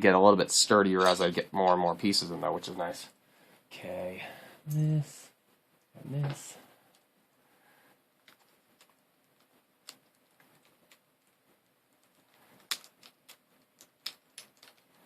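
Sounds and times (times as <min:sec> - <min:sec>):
plastic puzzle cube clicking: 0:08.2 - 0:15.0.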